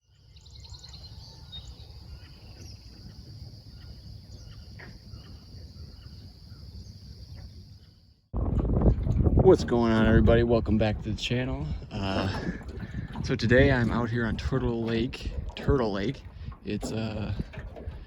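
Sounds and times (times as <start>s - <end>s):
bird chirps: 0.0s - 7.2s
low wind rumble: 0.4s - 18.0s.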